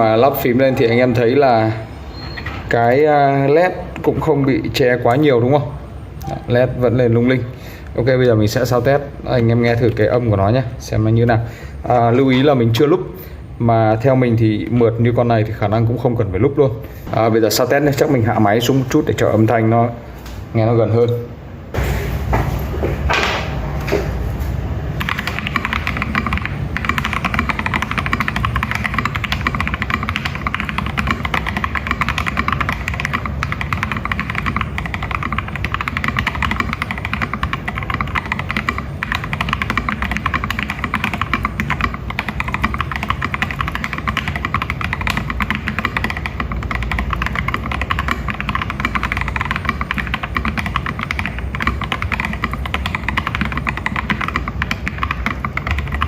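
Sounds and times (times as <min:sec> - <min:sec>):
fast mechanical keyboard typing: 0:00.0 - 0:11.1, 0:24.7 - 0:56.0.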